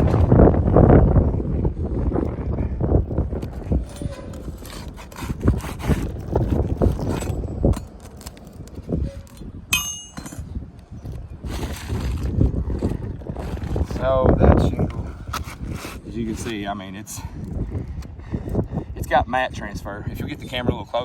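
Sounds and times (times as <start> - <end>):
pry bar scraping and knocking: 3.3 - 14.0
shingles tearing loose: 3.4 - 9.4
metallic clink: 9.7 - 10.5.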